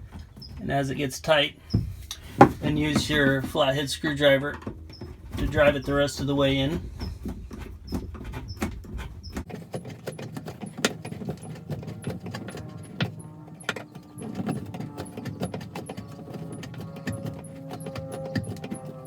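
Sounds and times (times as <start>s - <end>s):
screwdriver clicking and scraping metal: 7.0s - 19.0s.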